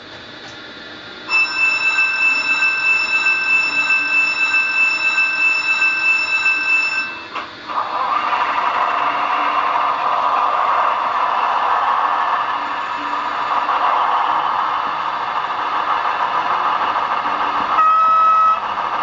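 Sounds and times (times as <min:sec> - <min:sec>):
diesel engine sound: 0:07.3 - 0:19.0
high-pitched horn tone: 0:17.8 - 0:18.6.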